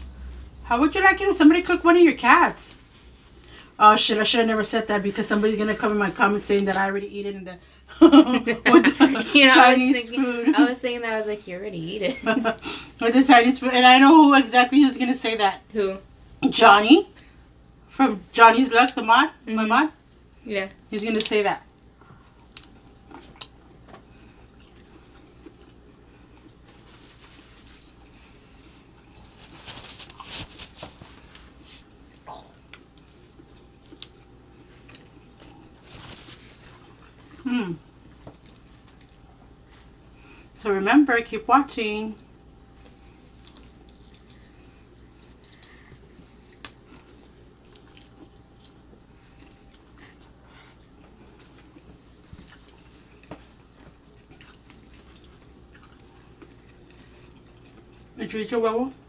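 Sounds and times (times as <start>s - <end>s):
people chewing: 2.6s - 3.8s, 20.7s - 40.6s, 42.2s - 58.2s
food rustling: 22.2s - 37.4s.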